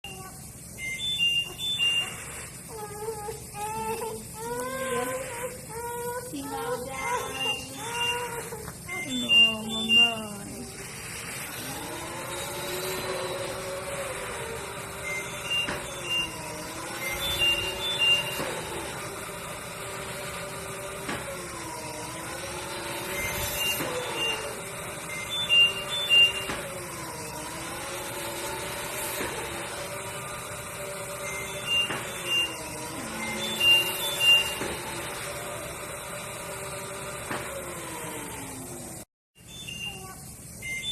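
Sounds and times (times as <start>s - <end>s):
machine blower hum: 0.0s - 39.1s
short high beeps: 0.8s - 2.2s, 39.5s - 40.9s.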